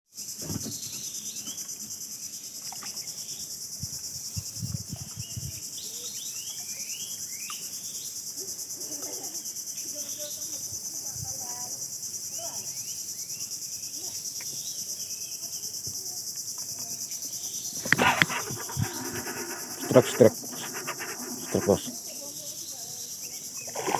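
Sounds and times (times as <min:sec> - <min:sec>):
insects trilling: 0:00.2 - 0:23.9.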